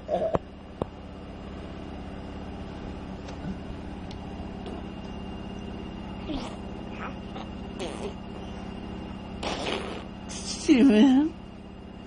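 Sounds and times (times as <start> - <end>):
low mechanical hum: 0.0 - 12.0
child blowing raspberry: 6.3 - 6.7, 7.3 - 8.2, 9.4 - 10.1.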